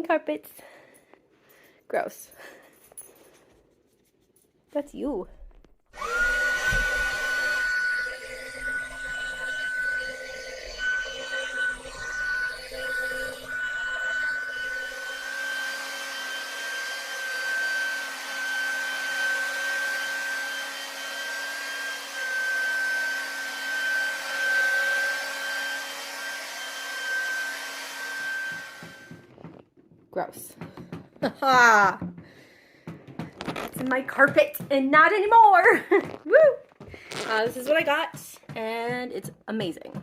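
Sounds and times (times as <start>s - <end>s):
carpet shampooer motor whine: 6.0s - 29.6s.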